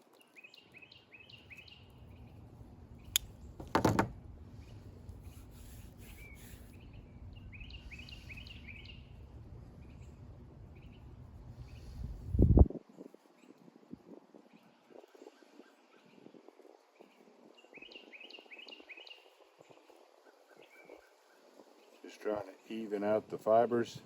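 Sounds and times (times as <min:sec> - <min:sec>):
low steady background noise: 0:00.0 - 0:24.0
short knock: 0:03.6 - 0:04.1
small bird chirping: 0:06.0 - 0:09.2.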